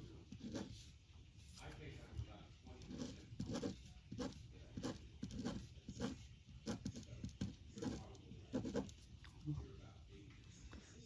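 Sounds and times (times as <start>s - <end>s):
pen scratching on paper: 0.2s - 0.9s, 2.8s - 9.0s.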